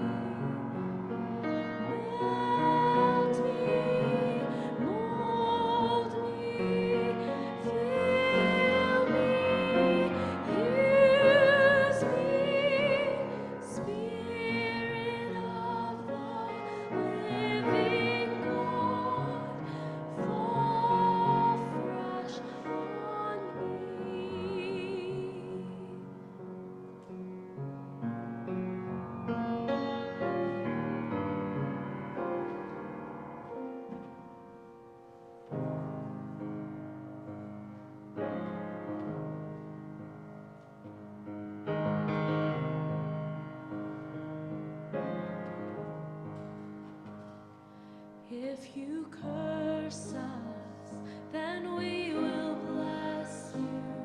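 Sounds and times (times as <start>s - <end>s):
piano accompaniment: 0.0s - 54.0s
person singing with vibrato: 1.8s - 26.2s, 48.3s - 54.0s.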